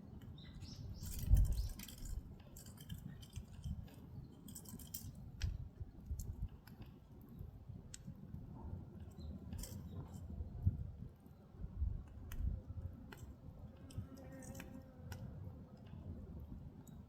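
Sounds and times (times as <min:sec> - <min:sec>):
low rumble of fire: 0:00.0 - 0:14.0.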